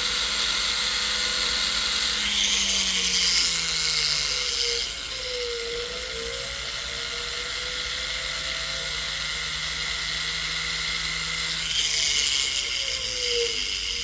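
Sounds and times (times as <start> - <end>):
rotary tool whine: 0.0 - 14.0
polishing wheel rubbing hiss: 8.8 - 14.0.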